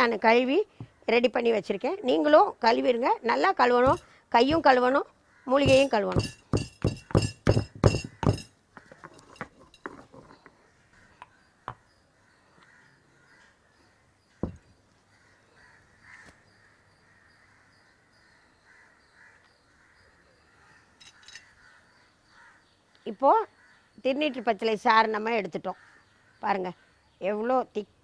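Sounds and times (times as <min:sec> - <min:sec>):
crow cawing: 0:05.2 - 0:05.9, 0:11.6 - 0:14.0, 0:15.1 - 0:22.7, 0:23.5 - 0:23.9, 0:25.7 - 0:27.0
thud: 0:14.4 - 0:14.7.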